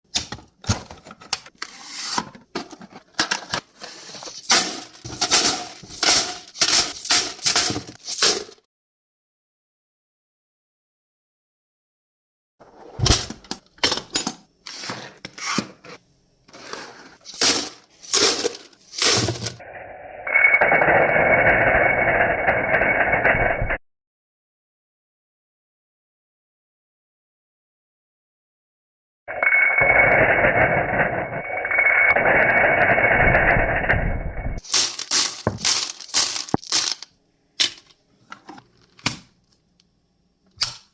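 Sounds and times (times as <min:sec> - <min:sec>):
cartridges clattering into metal can: 0:04.3 - 0:08.6, 0:17.3 - 0:19.6, 0:34.6 - 0:37.8.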